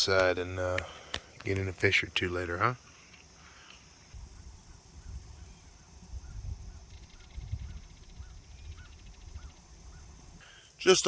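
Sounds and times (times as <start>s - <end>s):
insects chirping: 0.0s - 11.0s
wind rumble on microphone: 4.2s - 10.1s.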